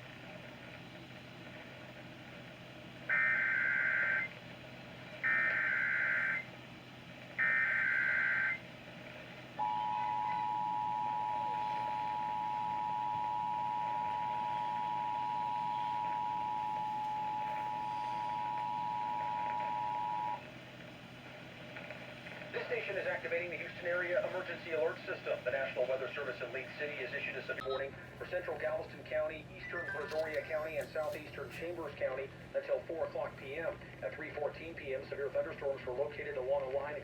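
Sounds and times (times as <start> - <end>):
two-tone attention signal: 9.6 - 20.4.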